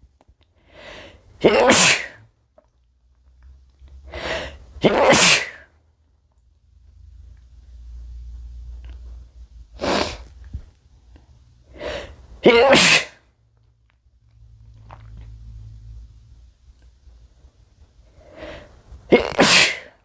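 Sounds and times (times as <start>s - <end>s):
quick breath: 0.6s - 1.3s, 4.0s - 4.7s, 11.7s - 12.3s, 18.1s - 18.9s
man sneezing: 1.4s - 2.2s, 4.4s - 5.7s, 12.4s - 13.2s, 19.1s - 20.0s.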